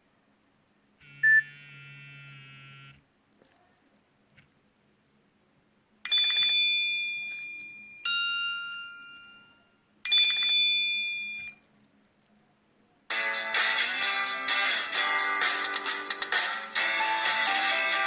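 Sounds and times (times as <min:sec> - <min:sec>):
guitar ringtone: 0:01.2 - 0:01.5
bell-like ringtone chimes: 0:06.1 - 0:11.6.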